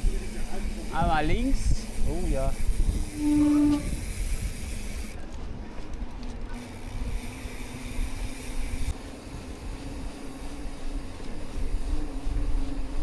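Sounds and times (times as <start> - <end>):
wind on microphone: 0.0 - 6.2
bike tyre rumble: 0.0 - 13.0.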